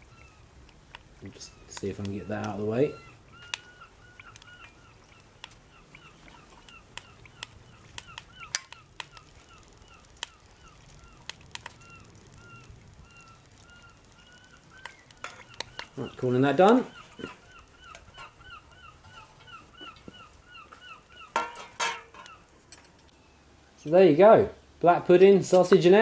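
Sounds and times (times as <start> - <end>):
frying pan spitting and crackling: 0.0 - 20.4
bird calling: 0.0 - 23.9.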